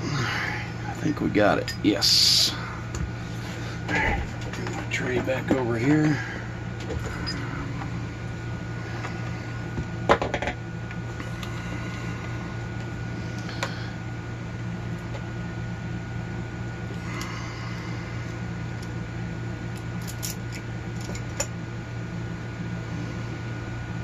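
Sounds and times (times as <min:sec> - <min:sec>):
steady low hum: 0:00.0 - 0:24.0
metal parts and tools handled: 0:06.9 - 0:07.5.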